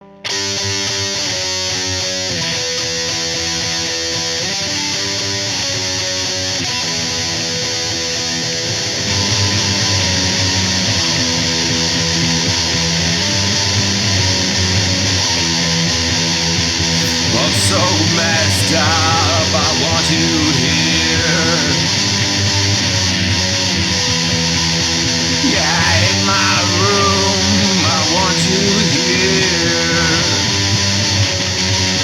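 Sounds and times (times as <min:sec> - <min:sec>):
distorted electric guitar riff: 0:00.0 - 0:32.0.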